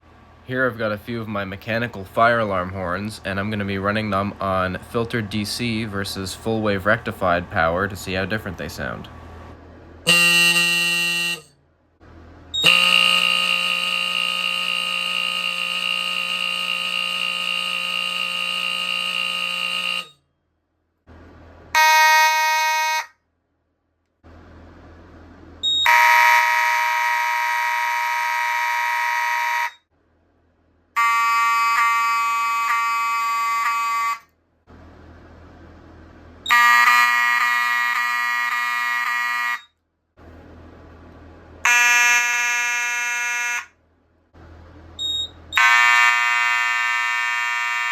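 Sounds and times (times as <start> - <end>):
fire alarm horns buzzing: 10.0 - 11.6, 12.5 - 20.3, 21.7 - 23.2, 25.6 - 29.9, 30.9 - 34.4, 36.4 - 39.8, 41.6 - 43.8, 45.0 - 47.9.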